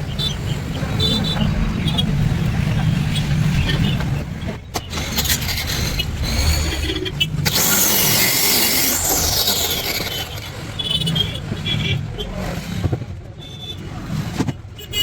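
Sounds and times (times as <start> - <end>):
wood scraping and rubbing: 4.8 - 10.7.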